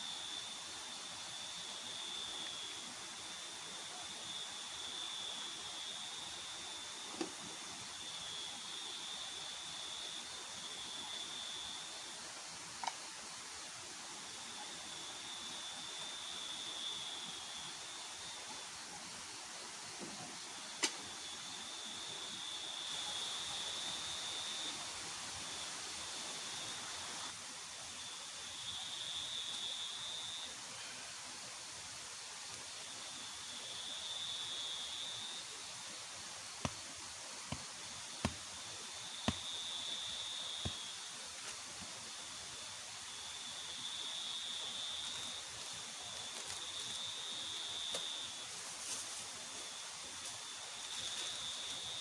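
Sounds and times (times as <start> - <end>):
insect high-pitched drone: 38.0 - 41.3.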